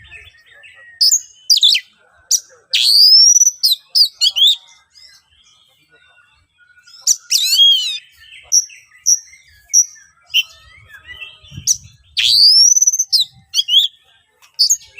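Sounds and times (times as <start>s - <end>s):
magpie-robin singing: 0.0s - 14.9s.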